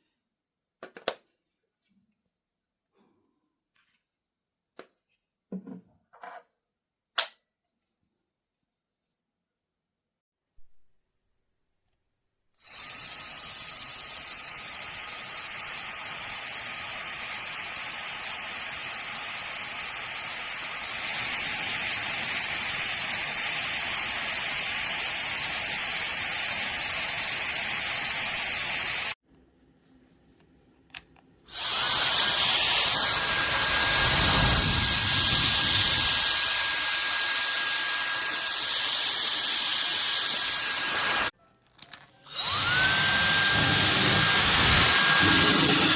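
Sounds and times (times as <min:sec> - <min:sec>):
hair dryer blowing: 0:12.6 - 0:29.2, 0:31.5 - 0:41.3, 0:42.3 - 0:45.9
low rumble of air: 0:33.5 - 0:36.2.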